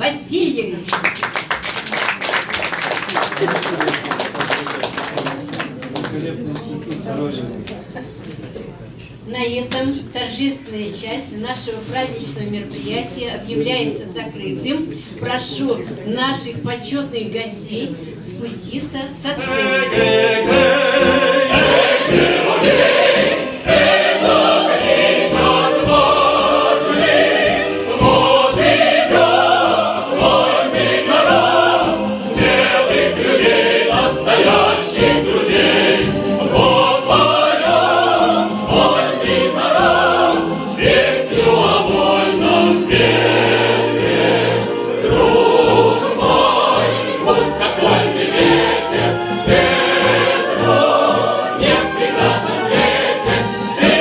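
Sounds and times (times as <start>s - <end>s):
choir singing: 19.3s - 54.0s
instrumental accompaniment: 19.4s - 54.0s
steady beat: 19.4s - 54.0s.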